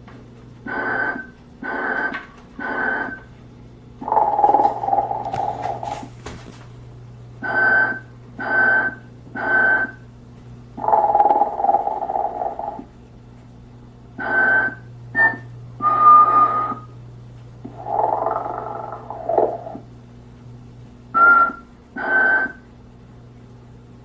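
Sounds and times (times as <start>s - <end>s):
steady low hum: 0.0s - 24.0s
recorded snoring through small speaker: 0.7s - 3.2s, 4.0s - 5.9s, 10.8s - 12.9s, 17.7s - 19.9s.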